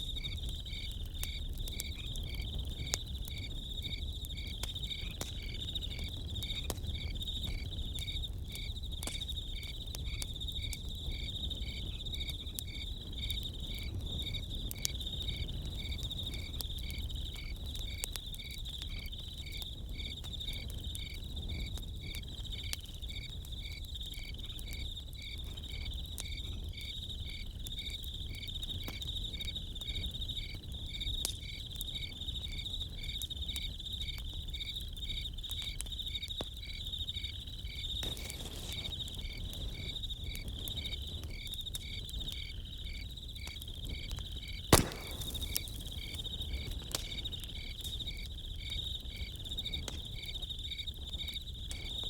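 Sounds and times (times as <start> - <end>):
crackling campfire: 0.0 - 52.0
crickets chirping: 0.0 - 52.0
loud pop from fire: 38.0 - 39.3, 44.6 - 48.2.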